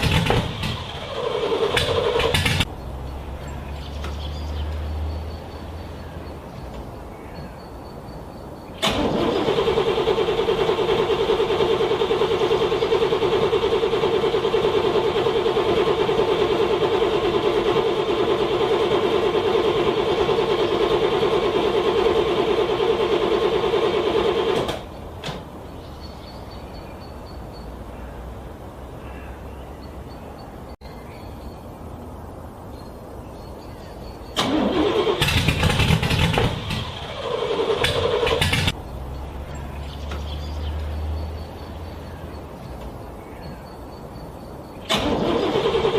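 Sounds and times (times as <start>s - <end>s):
car starter cranking engine: 0.0s - 2.7s, 8.8s - 25.5s, 34.3s - 38.8s, 44.8s - 45.9s.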